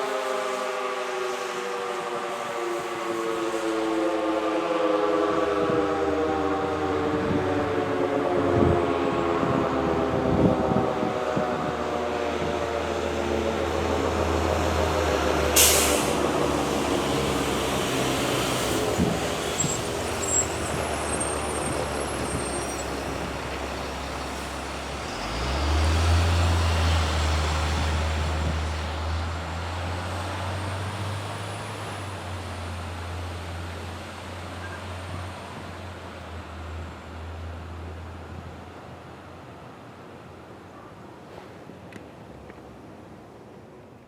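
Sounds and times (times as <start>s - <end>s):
siren winding down: 0.2s - 28.5s
short sharp hiss: 15.6s - 16.8s.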